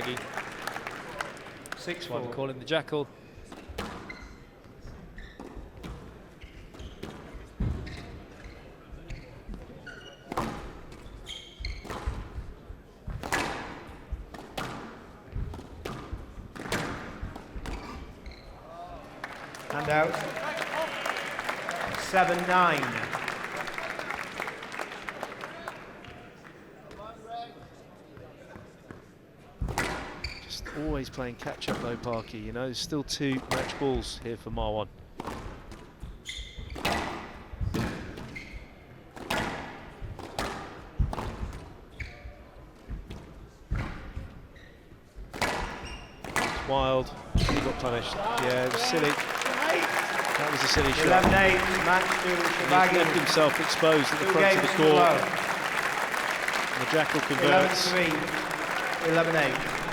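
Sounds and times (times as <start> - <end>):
shoes squeaking on court floor: 4.0 - 12.4, 17.6 - 18.7, 36.1 - 36.9, 41.9 - 42.5, 45.7 - 46.3, 47.4 - 59.9
squash ball striking rackets and walls: 45.3 - 46.6.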